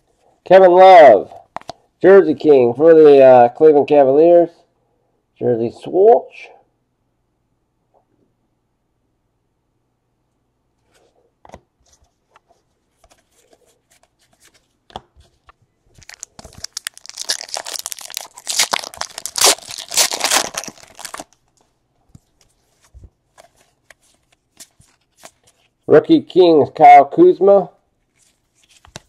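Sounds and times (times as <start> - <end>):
wrapper ripping and crackling: 15.9 - 21.6.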